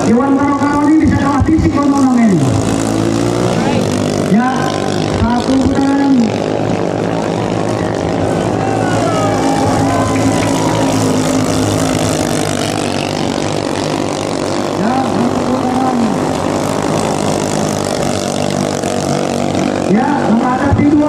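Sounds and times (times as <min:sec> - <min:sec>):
longtail boat engines racing: 0:00.0 - 0:21.0.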